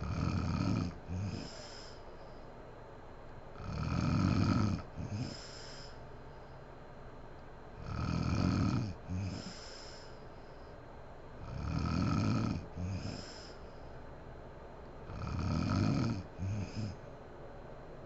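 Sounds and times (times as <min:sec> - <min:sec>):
woman snoring: 0:00.0 - 0:02.0, 0:03.6 - 0:06.0, 0:07.8 - 0:10.1, 0:11.4 - 0:13.6, 0:15.1 - 0:17.0.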